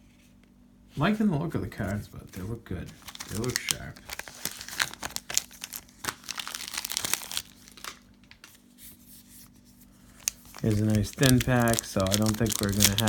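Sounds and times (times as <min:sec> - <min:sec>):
plastic wrapper crinkling and tearing: 0:02.8 - 0:08.6, 0:10.1 - 0:13.0.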